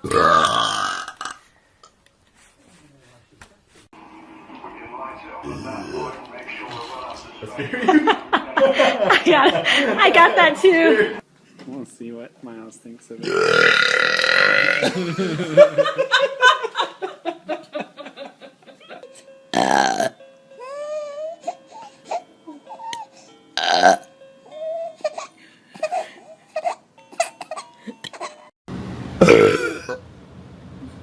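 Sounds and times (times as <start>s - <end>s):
person burping deeply: 0.0s - 1.4s, 13.2s - 15.4s, 19.6s - 20.2s, 23.6s - 24.0s, 29.2s - 30.0s
bursts of laughter: 7.6s - 11.2s.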